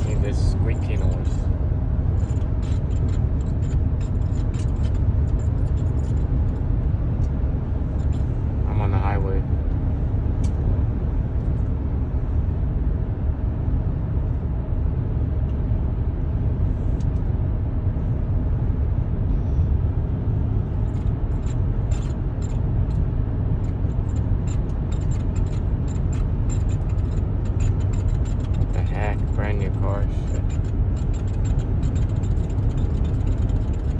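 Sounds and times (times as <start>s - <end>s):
road and engine rumble: 0.0s - 33.9s
high-pitched squeaks: 23.6s - 33.9s.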